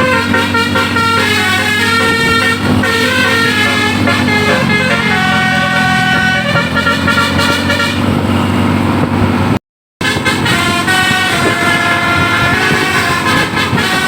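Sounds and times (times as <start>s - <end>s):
bus musical horn playing: 0.0s - 8.7s, 10.0s - 14.0s.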